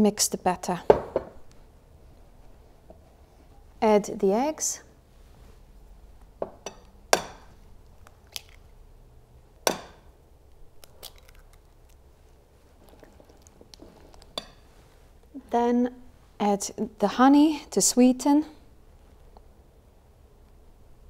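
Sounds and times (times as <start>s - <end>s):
eggs cracking against bowl: 7.2s - 8.7s, 10.8s - 12.0s.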